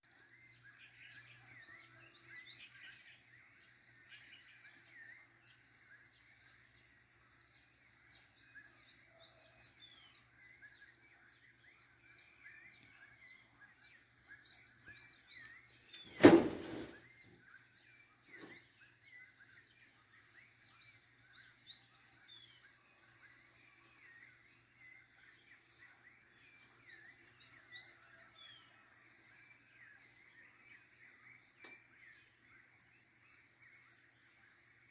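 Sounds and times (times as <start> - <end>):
songbirds chirping: 0.0 - 34.9
distant bird calls: 11.8 - 17.0
loud thump: 16.1 - 17.0.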